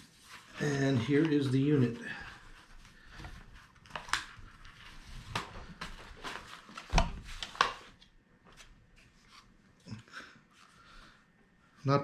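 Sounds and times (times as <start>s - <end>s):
rustling handling noise: 0.0s - 9.6s.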